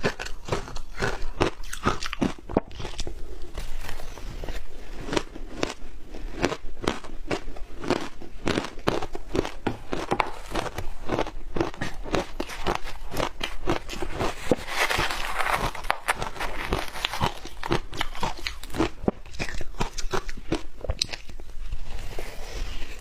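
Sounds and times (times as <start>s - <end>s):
chewing crushed ice: 0.0s - 23.0s.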